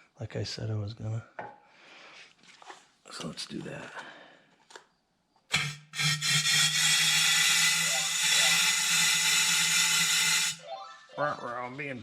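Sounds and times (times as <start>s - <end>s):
compressed air blowgun hissing: 5.5s - 10.6s.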